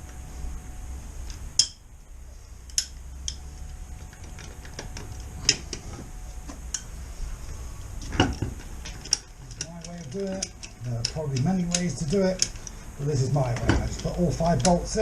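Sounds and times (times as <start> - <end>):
metallic bolt clicks and clinks: 8.8 - 12.8.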